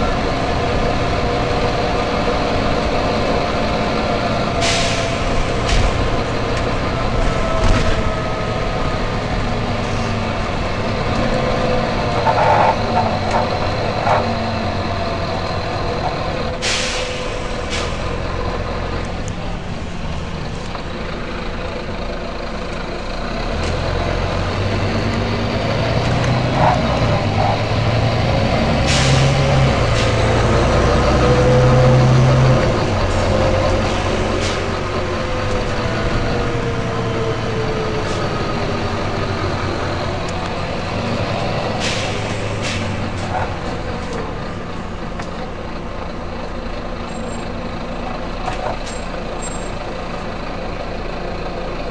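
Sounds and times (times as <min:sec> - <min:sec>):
diesel bus engine running: 0:00.0 - 0:51.9
air brake hisses: 0:04.6 - 0:05.9, 0:16.6 - 0:18.2, 0:28.8 - 0:30.2, 0:41.7 - 0:43.3.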